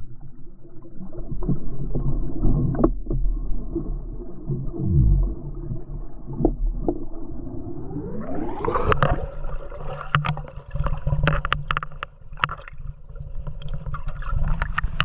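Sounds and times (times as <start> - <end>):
water sloshing and gurgling: 0.0 - 15.0
steady hum: 4.6 - 5.7.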